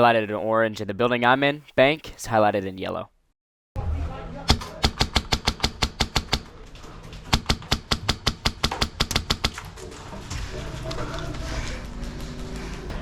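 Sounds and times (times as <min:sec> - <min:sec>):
airsoft gun rapid firing: 0:04.5 - 0:06.5, 0:07.3 - 0:09.6.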